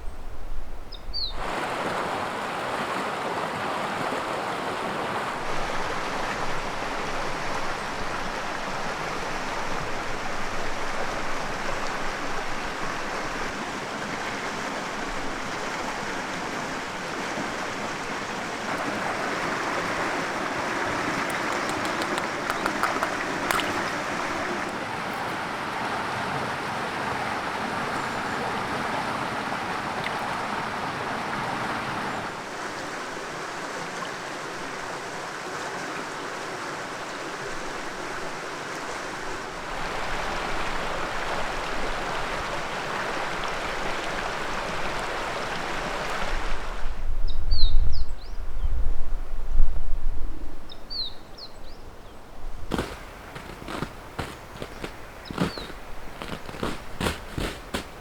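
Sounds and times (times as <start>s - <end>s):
bird chirping: 0.9s - 1.4s, 52.7s - 57.8s
river water rushing: 1.4s - 36.9s, 52.7s - 58.0s
wind rumble on microphone: 46.5s - 50.9s.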